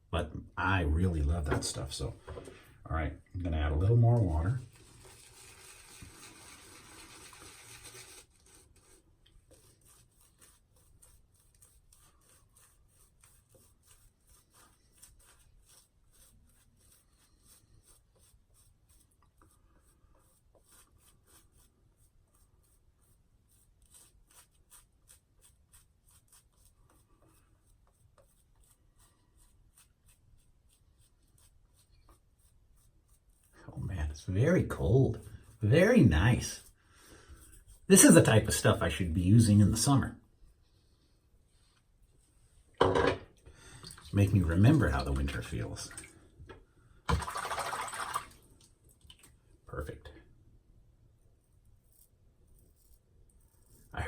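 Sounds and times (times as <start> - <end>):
razor scratching while shaving: 4.8 - 33.6, 51.7 - 54.0
water running: 43.6 - 46.2, 47.1 - 49.3.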